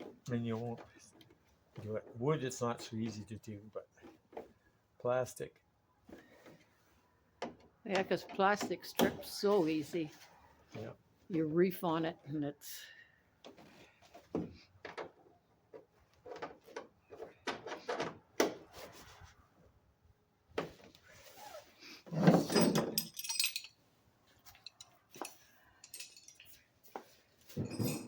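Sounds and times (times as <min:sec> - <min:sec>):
clattering rattle: 0:22.2 - 0:23.8.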